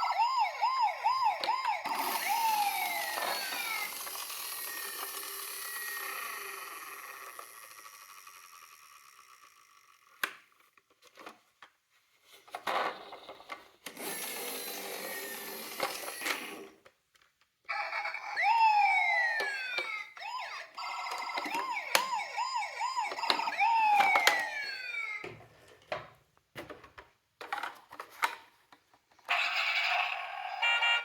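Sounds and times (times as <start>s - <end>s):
toy electronic sirens: 0.0s - 10.0s, 17.7s - 25.3s, 29.3s - 31.0s.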